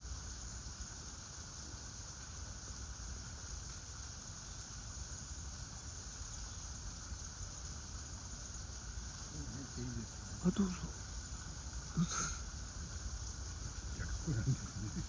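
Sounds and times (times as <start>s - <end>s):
even hiss: 0.0s - 15.0s.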